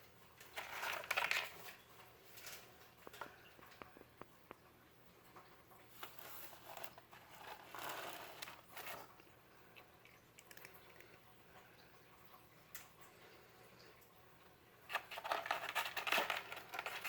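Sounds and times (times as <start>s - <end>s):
cat scratching in cardboard box: 14.9s - 17.0s.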